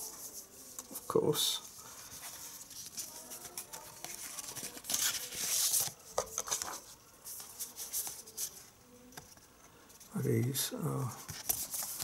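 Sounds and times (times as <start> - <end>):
paper rustling: 0.0 - 9.4, 11.1 - 12.0
paper sliding rustle: 2.0 - 8.6.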